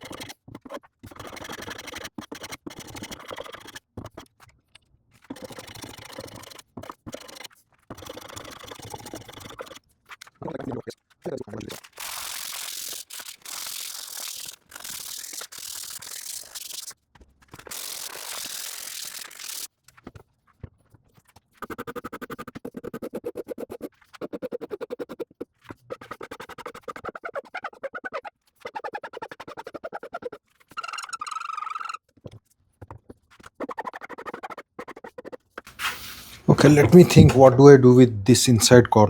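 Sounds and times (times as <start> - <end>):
hand file rasping on wood: 0.0 - 4.2.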